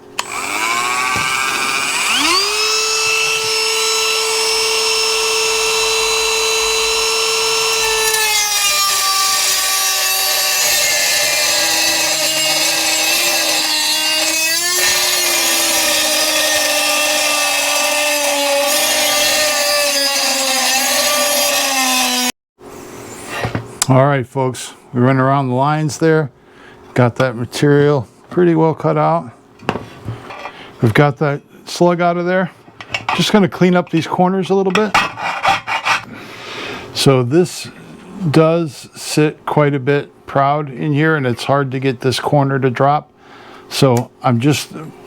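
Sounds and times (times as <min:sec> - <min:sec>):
rotary tool whine: 0:00.1 - 0:22.4.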